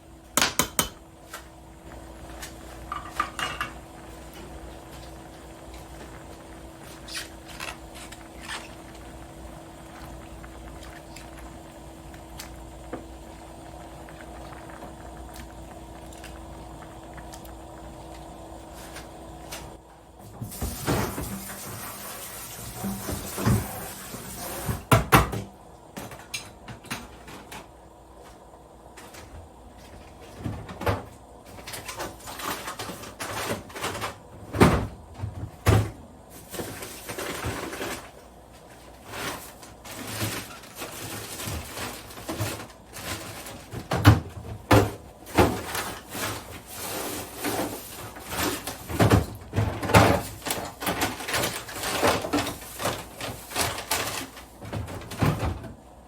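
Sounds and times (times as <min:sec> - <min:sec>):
cookware and dishes clacking: 0:02.9 - 0:03.8.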